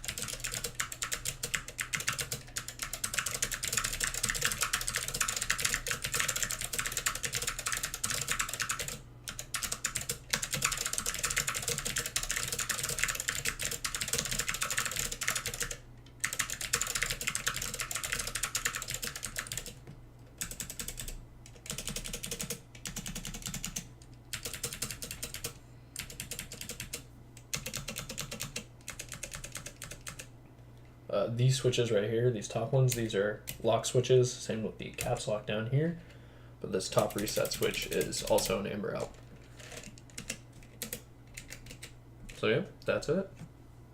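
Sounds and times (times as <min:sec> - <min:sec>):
fast typing on clicky keyboard: 0:00.0 - 0:19.8, 0:20.4 - 0:30.3, 0:37.0 - 0:38.6, 0:39.6 - 0:42.4.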